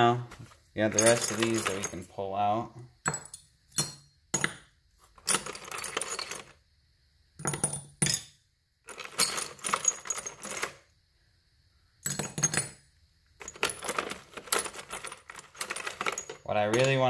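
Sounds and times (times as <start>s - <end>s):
steel bolts clinking: 0.9s - 2.1s, 13.4s - 17.0s.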